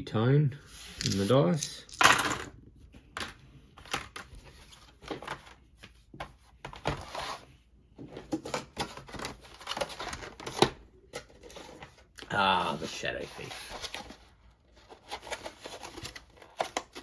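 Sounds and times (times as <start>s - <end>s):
game pieces tapping and clicking: 0.9s - 2.5s.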